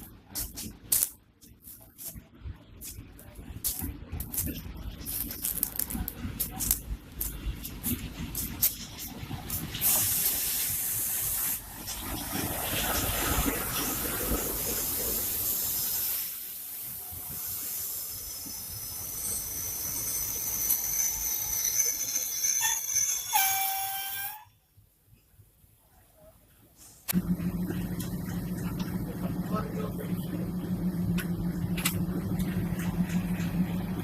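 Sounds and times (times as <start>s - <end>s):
rolling rumble: 1.8s - 10.3s, 27.1s - 34.0s
train passing: 4.7s - 24.4s, 27.2s - 34.0s
high whistling tones: 18.7s - 24.6s
train horn: 23.3s - 24.5s.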